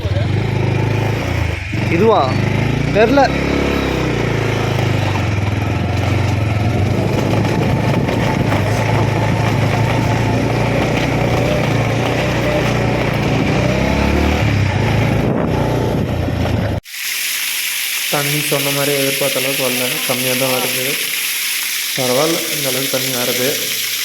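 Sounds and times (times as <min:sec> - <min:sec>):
motorcycle engine running: 0:00.0 - 0:16.8
wind noise: 0:05.0 - 0:12.0, 0:12.9 - 0:16.8.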